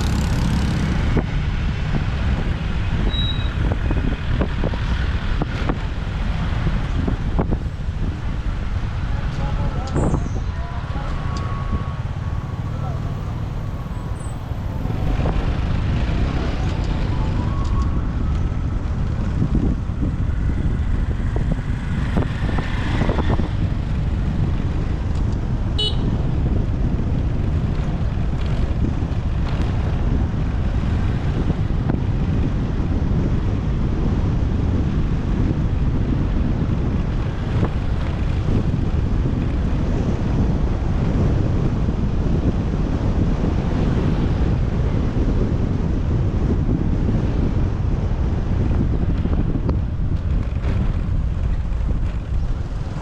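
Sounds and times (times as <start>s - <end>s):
motorbike engine: 0.0s - 2.4s
traffic noise: 0.0s - 53.0s
wind on microphone: 0.0s - 53.0s
car horns tooting: 25.8s - 26.2s.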